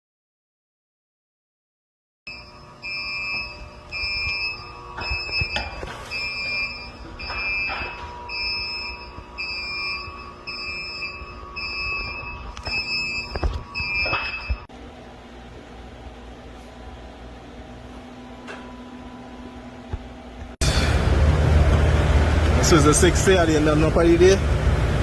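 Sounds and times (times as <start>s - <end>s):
electronic alarm beeping: 2.3s - 14.7s.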